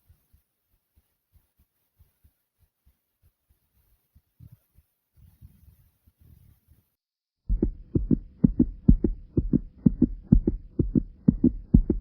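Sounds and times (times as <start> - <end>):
faint low rumbling: 7.5 - 12.0
heartbeat thumps: 7.5 - 12.0.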